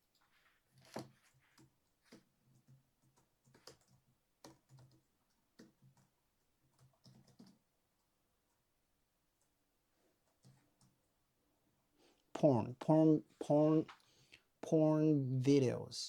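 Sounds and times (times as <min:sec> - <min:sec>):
faint keyboard typing clicks: 0:00.1 - 0:08.6, 0:09.3 - 0:11.1.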